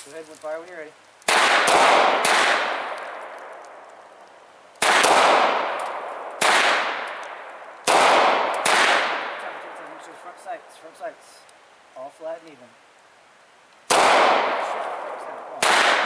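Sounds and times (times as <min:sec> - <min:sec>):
pistol shots echoing: 0:01.3 - 0:03.9, 0:04.8 - 0:10.0, 0:13.9 - 0:16.0.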